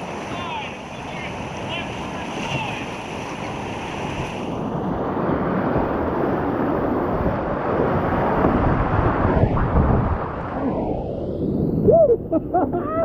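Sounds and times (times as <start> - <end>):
whitewater rushing: 0.0 - 4.6.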